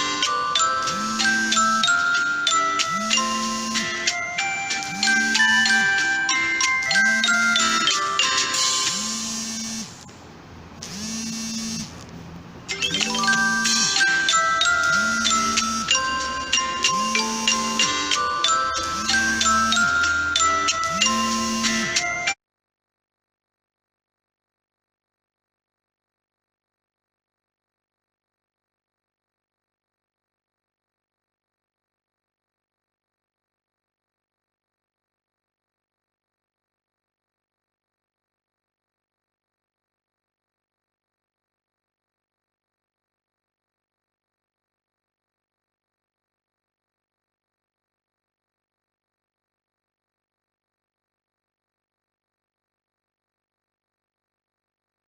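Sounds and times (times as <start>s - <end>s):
background music: 0.0s - 9.1s, 12.6s - 22.4s.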